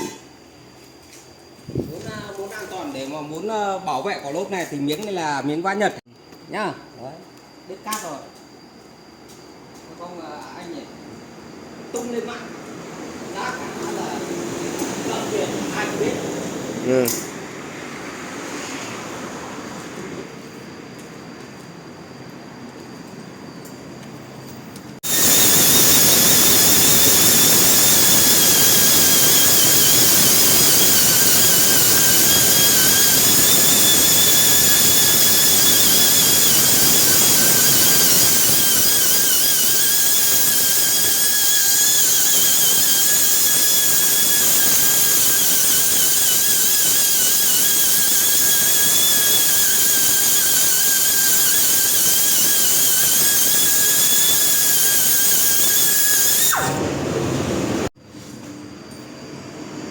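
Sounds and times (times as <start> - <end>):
grinding on tire: 25.0 - 56.9
power grinder whining: 25.0 - 57.9.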